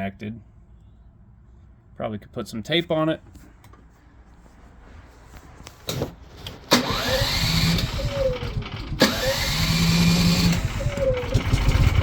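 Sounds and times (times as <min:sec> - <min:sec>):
generator running: 0:06.4 - 0:12.0.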